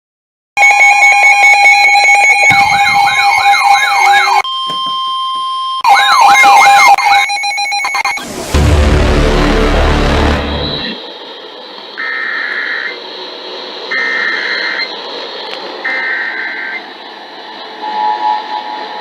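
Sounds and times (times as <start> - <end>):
siren sweeping up and down: 0.6 - 4.4, 5.8 - 11.1
steady electronic alarm tones: 0.6 - 11.0, 13.9 - 15.0, 15.8 - 17.1
music: 8.2 - 11.0
pulsing tones: 8.2 - 11.0.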